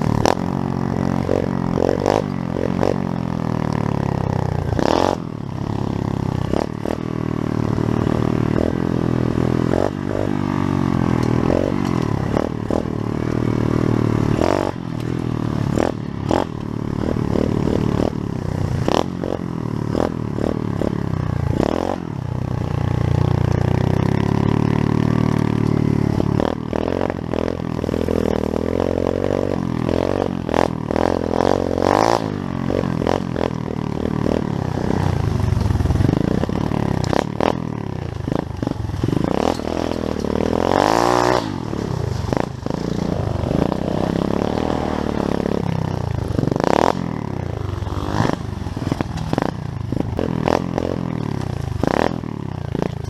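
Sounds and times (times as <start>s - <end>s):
pit bike engine revving: 0.0s - 53.0s
sharp knocks and clatter: 38.6s - 41.5s, 48.1s - 52.2s.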